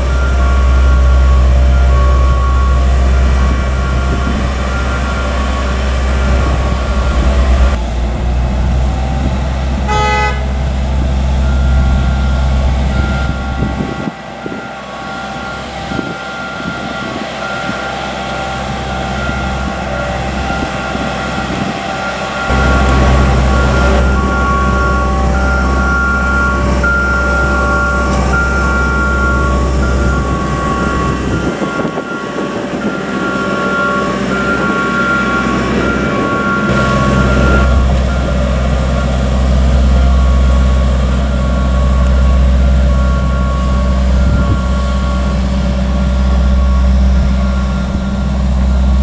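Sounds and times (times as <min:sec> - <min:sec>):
high warning beep: 0:00.0 - 0:07.8, 0:18.9 - 0:49.0
low engine drone: 0:00.0 - 0:49.0
short horn toot: 0:09.9 - 0:10.6.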